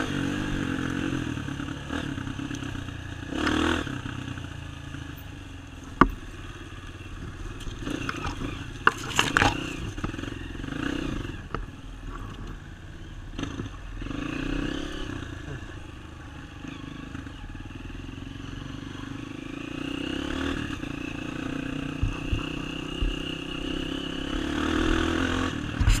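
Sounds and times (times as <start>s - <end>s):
off-road motorcycle engine revving: 0.0s - 26.0s
knocks and rattles from riding: 20.6s - 25.0s.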